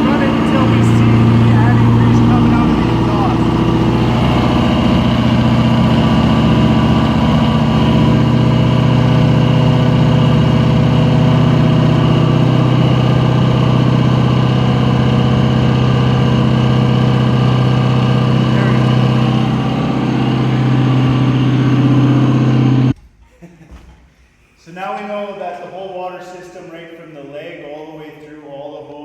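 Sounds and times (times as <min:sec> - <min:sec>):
boat engine idling: 0:00.0 - 0:23.0.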